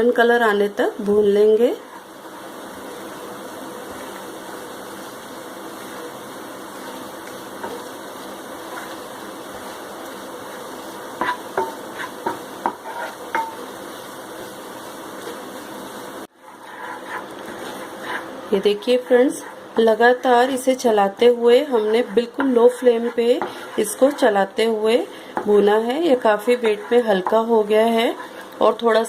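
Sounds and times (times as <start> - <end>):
flour sizzling in a pan: 0.0 - 29.0
spoon scraping a pan: 8.5 - 15.7, 16.4 - 19.9, 26.2 - 28.6.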